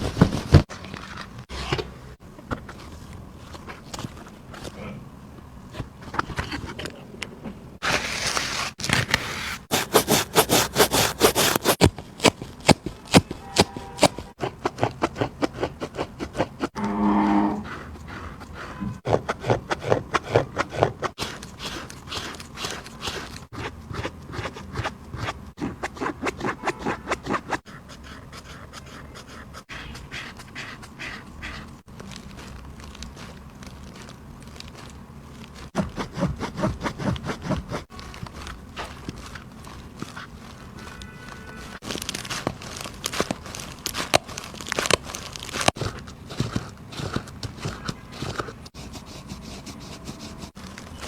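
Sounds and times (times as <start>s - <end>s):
packaging scraping and rustling: 7.8s - 15.4s, 30.2s - 48.8s, 49.8s - 51.0s.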